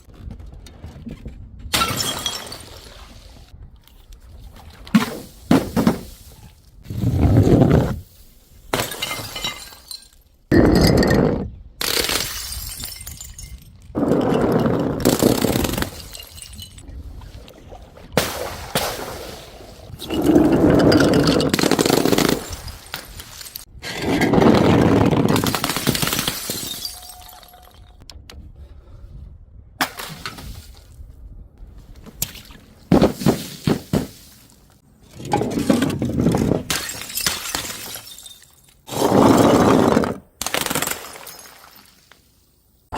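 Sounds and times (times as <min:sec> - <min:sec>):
glass bottles shattering: 0:01.8 - 0:02.9, 0:08.7 - 0:11.0, 0:12.0 - 0:13.9, 0:15.1 - 0:16.8, 0:25.4 - 0:28.0, 0:36.7 - 0:38.8
broken glass scattering: 0:25.4 - 0:28.0, 0:36.7 - 0:38.8.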